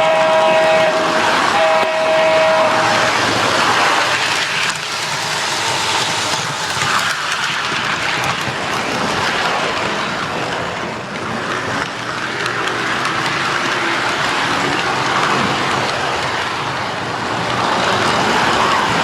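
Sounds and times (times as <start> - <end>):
model diesel horn: 0.0 - 3.1
model train rumbling and rattling: 0.0 - 19.0.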